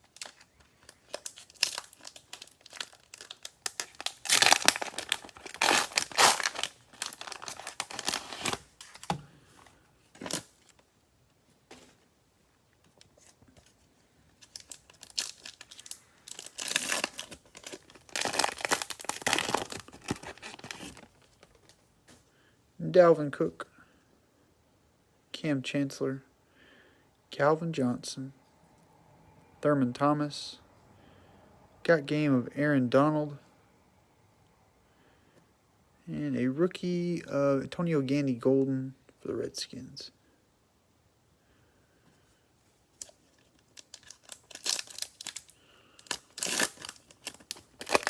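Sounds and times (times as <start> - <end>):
cellophane wrapper tearing and crinkling: 0.0 - 9.1, 14.4 - 21.8, 42.9 - 48.0.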